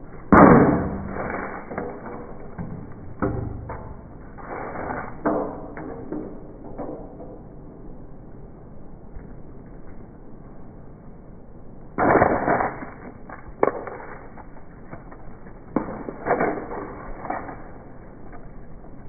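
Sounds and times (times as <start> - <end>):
sharp crack: 0.0 - 7.4, 12.0 - 18.6.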